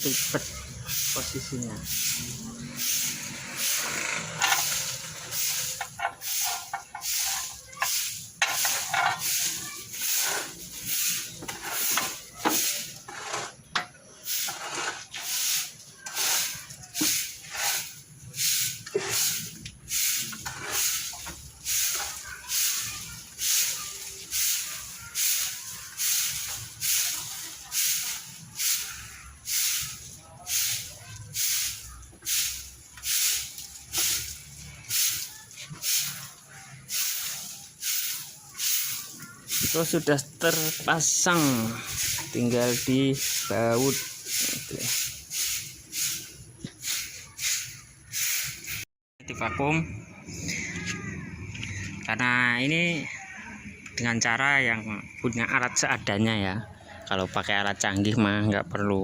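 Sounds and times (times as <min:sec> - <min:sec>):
short hissing pulses: 0:14.2 - 0:48.9.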